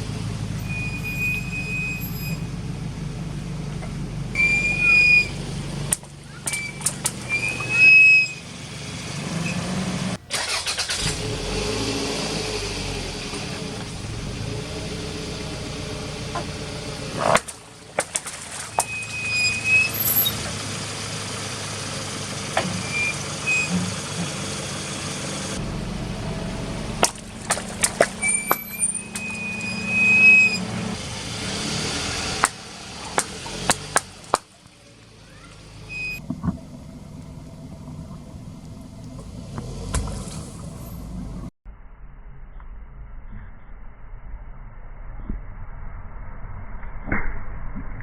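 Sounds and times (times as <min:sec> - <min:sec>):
car engine running: 0:00.0 - 0:41.5
short squeaks: 0:00.6 - 0:02.6, 0:03.7 - 0:11.2, 0:15.6 - 0:31.0, 0:35.3 - 0:36.4
tyres crushing objects: 0:16.3 - 0:20.5, 0:26.0 - 0:34.6.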